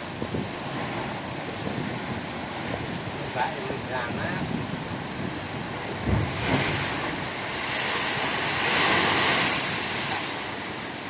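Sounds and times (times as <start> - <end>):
ocean surf breaking: 0.0 - 11.0
wind buffeting microphone: 0.0 - 11.0.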